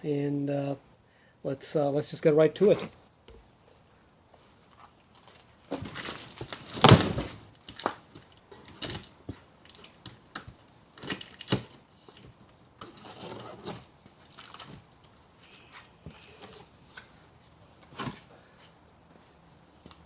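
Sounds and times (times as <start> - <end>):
packaging crinkling: 5.1 - 10.0, 12.8 - 17.1
cardboard tearing: 5.7 - 7.9.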